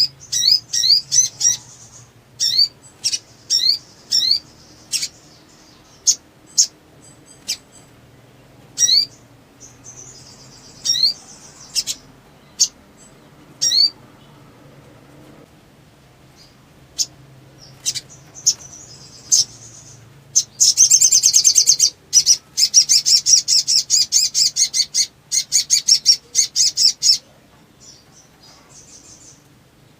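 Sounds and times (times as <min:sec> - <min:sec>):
songbird singing high sharp notes: 0:00.0 - 0:07.9, 0:08.8 - 0:14.0, 0:16.4 - 0:27.2.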